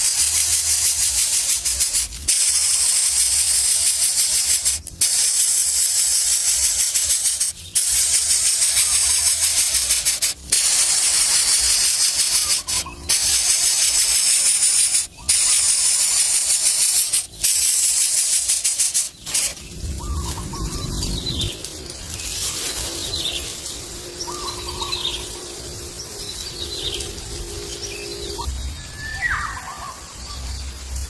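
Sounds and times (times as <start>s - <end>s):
high-pitched hiss: 0.0s - 31.0s
bird chirps: 22.9s - 31.0s.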